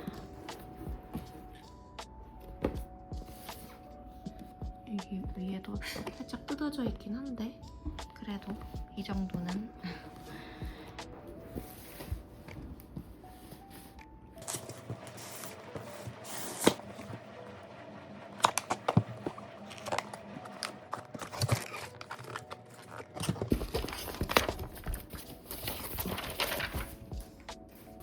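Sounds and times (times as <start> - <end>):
cardboard and paper rustling: 11.2 - 17.2, 18.4 - 28.0.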